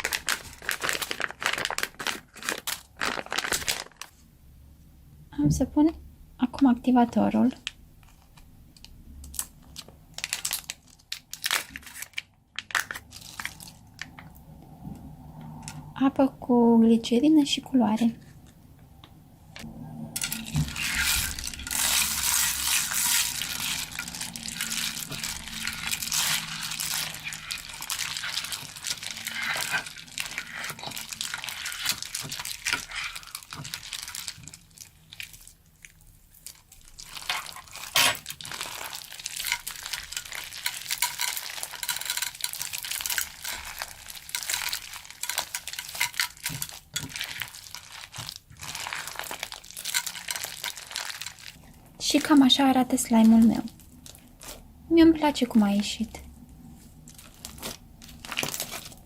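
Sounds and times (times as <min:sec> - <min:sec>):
crunchy slime crackling: 0:00.0 - 0:04.2, 0:09.2 - 0:14.4, 0:20.1 - 0:54.9, 0:56.9 - 0:59.0
plastic bag crinkling: 0:00.0 - 0:04.2, 0:09.2 - 0:14.3, 0:20.2 - 0:54.7, 0:56.9 - 0:59.0.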